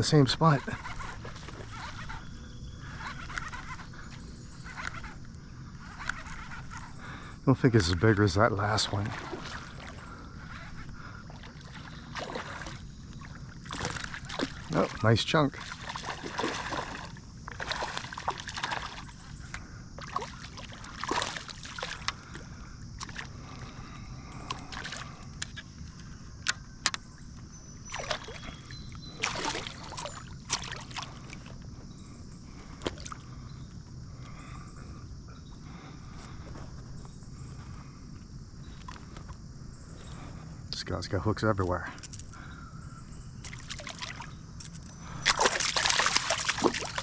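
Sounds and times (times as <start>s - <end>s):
fish splashing in water: 8.9s - 10.6s, 11.3s - 19.4s, 20.0s - 22.4s, 27.9s - 31.6s, 43.4s - 47.0s.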